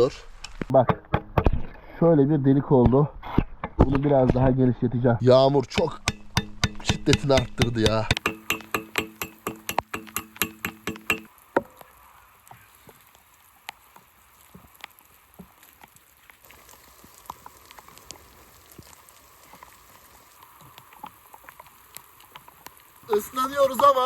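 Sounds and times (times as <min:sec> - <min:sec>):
raindrops ticking on surfaces: 0:05.6 - 0:24.0
heavy rain hissing: 0:16.4 - 0:24.0.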